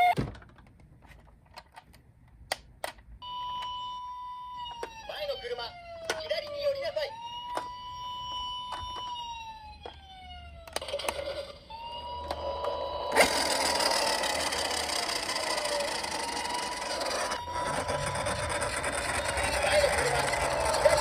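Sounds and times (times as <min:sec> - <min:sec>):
electronic toy sirens wailing: 0:03.2 - 0:21.0
plastic toys clicking: 0:12.3 - 0:21.0.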